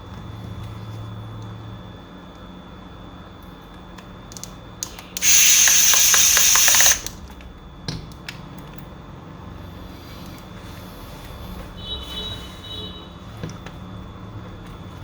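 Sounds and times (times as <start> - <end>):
small parts clicking: 4.3 - 7.2
spray hiss: 5.2 - 7.1.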